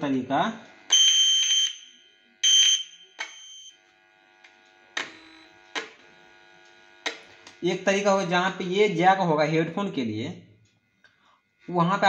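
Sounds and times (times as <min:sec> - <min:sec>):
high-pitched buzzing beeps: 0:00.9 - 0:03.8.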